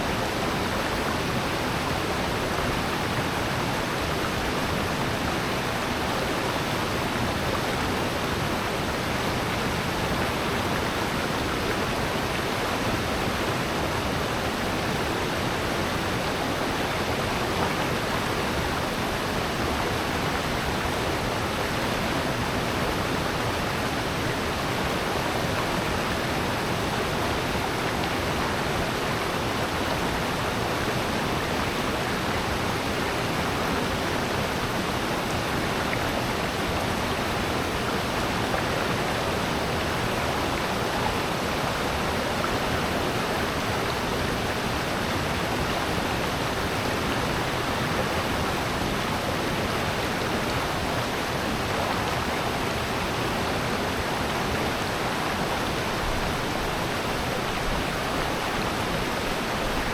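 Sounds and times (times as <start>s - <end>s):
water rushing in rocky gorge: 0.0s - 59.9s.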